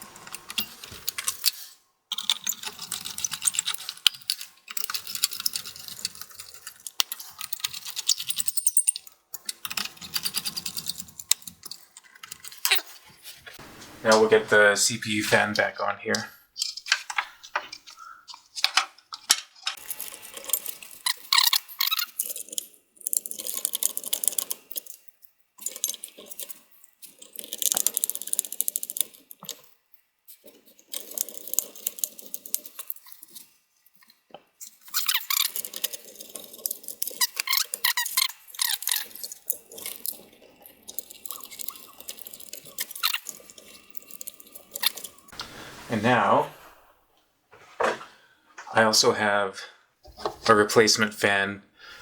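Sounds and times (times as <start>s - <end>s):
metal clinking and rattling: 0.1s - 13.0s, 16.6s - 29.7s, 30.3s - 45.3s.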